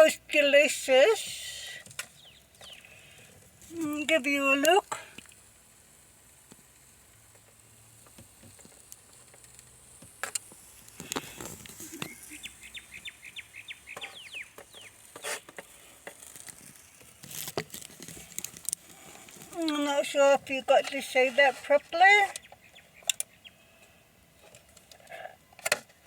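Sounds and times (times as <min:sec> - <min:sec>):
chicken sizzling faintly: 0:02.6 - 0:21.8.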